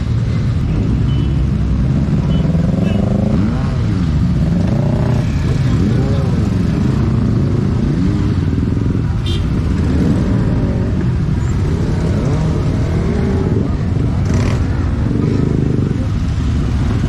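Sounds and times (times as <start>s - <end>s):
motorcycle engines revving: 0.0s - 17.0s.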